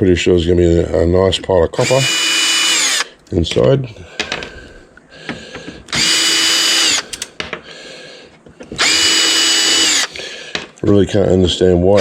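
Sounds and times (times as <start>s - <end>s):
power drill whining: 1.8s - 3.1s, 5.9s - 7.3s, 8.7s - 10.3s.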